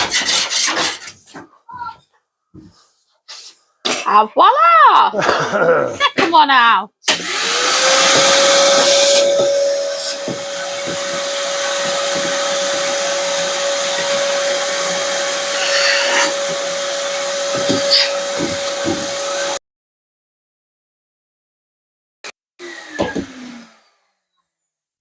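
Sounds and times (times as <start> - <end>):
electric motor whining: 7.1 - 19.6, 22.6 - 24.2.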